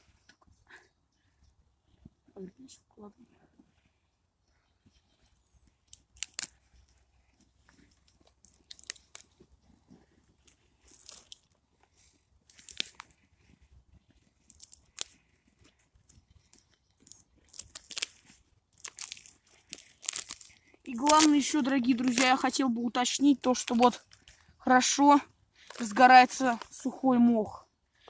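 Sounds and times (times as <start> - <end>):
sticks snapping: 5.9 - 6.6, 8.4 - 9.3, 12.5 - 13.2, 14.4 - 15.2, 17.0 - 22.6.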